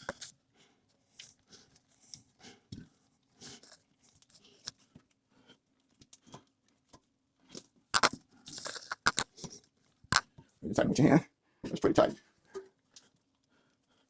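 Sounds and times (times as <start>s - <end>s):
nuts being tightened on bolts: 8.0s - 9.2s.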